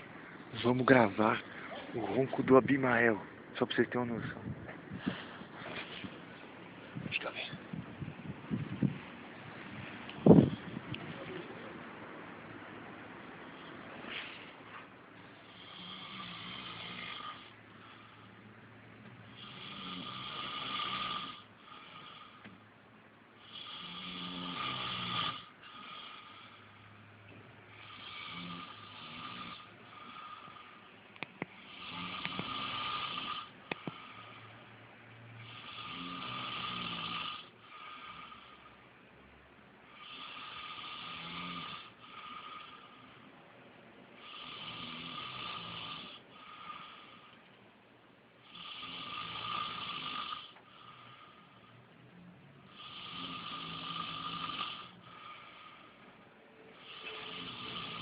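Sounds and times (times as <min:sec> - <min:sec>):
quiet breathing: 0:00.0 - 0:03.0, 0:04.2 - 0:07.9, 0:13.3 - 0:58.0
man snoring heavily: 0:15.4 - 0:18.3, 0:19.3 - 0:22.4, 0:23.4 - 0:26.9, 0:27.7 - 0:30.9, 0:31.6 - 0:34.6, 0:35.4 - 0:38.8, 0:39.9 - 0:43.2, 0:44.2 - 0:47.4, 0:48.4 - 0:51.7, 0:52.7 - 0:56.0, 0:56.7 - 0:58.0.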